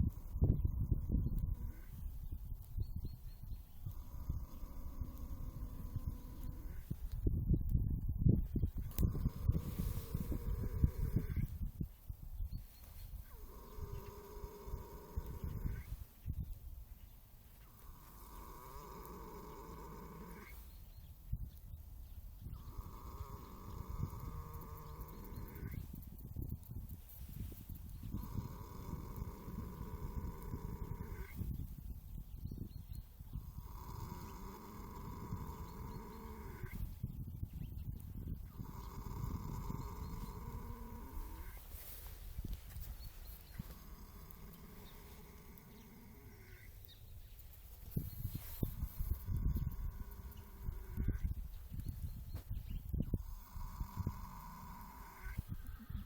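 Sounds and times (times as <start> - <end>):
horse snoring: 3.9 - 7.1, 8.9 - 11.5, 13.3 - 16.0, 17.6 - 20.8, 22.5 - 25.9, 28.1 - 31.4, 33.4 - 36.9, 38.4 - 46.8, 47.9 - 51.3, 53.0 - 56.0.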